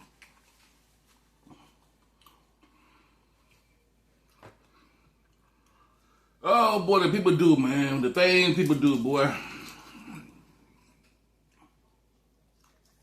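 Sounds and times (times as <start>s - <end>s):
faint chewing: 0.0s - 6.2s, 9.4s - 13.0s.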